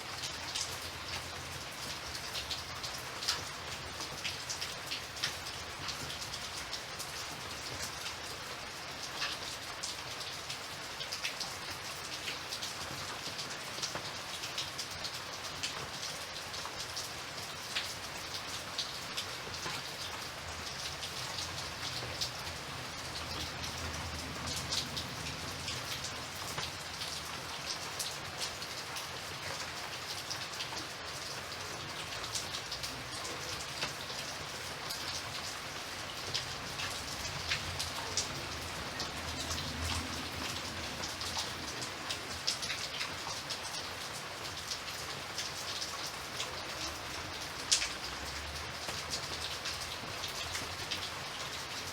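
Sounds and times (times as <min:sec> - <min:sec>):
raindrops ticking on a surface: 0:00.0 - 0:51.9
steady rain hiss: 0:00.0 - 0:51.9.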